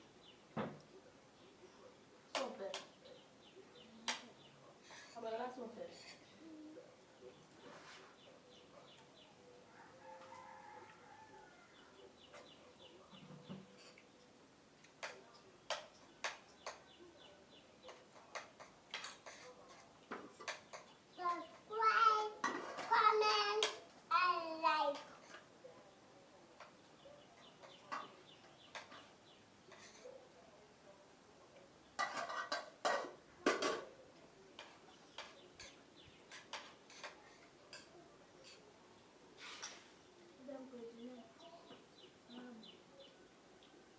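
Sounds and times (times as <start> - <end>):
spoon scraping a plate: 17.8 - 20.9, 28.7 - 30.1, 34.6 - 38.7, 39.4 - 39.9.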